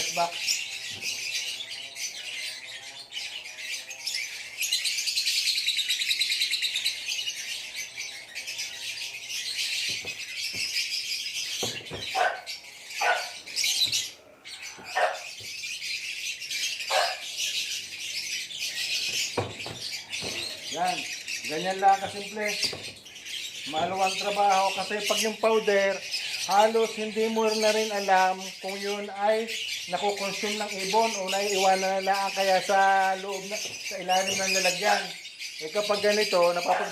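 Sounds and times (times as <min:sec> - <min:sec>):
lovebirds chirping shrilly: 0:00.0 - 0:36.9
sharp bird calls: 0:00.0 - 0:36.9.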